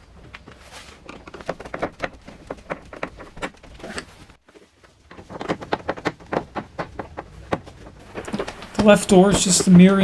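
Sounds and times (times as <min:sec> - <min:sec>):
parts clicking and tapping: 0:05.1 - 0:10.0.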